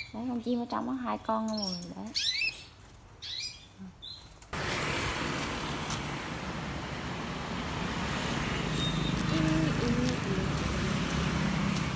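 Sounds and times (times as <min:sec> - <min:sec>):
canary chirp: 0:01.1 - 0:04.4, 0:08.7 - 0:09.6
street traffic noise: 0:04.4 - 0:11.9.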